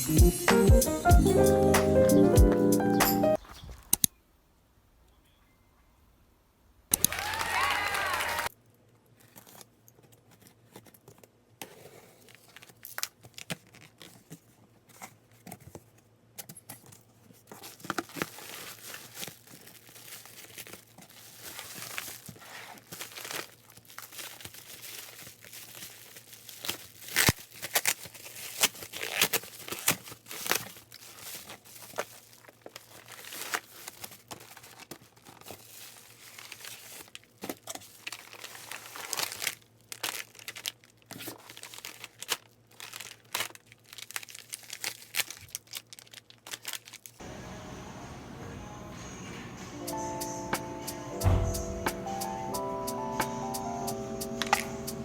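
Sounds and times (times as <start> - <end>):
packaging being torn open: 12.2 - 14.3, 17.6 - 47.2
plastic wrapping crinkling: 12.2 - 16.0, 16.8 - 47.2.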